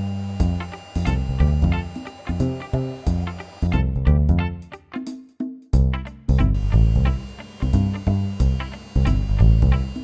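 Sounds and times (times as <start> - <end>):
plucked guitar and bass music: 0.0 - 10.0.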